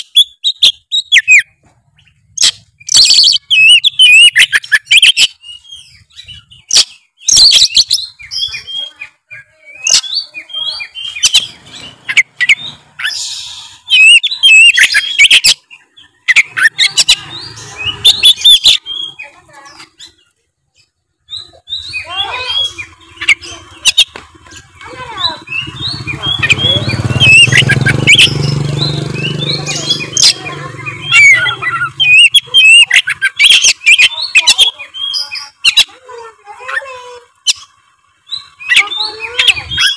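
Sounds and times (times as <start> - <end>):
bird singing: 0.0 - 39.9.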